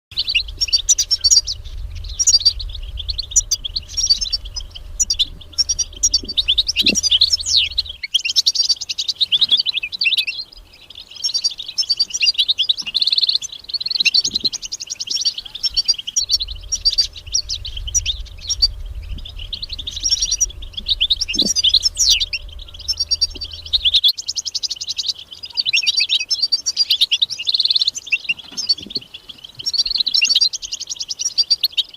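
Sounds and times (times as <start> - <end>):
faint low rumble: 0.1 - 8.1, 15.4 - 24.1
finch singing: 0.1 - 31.9.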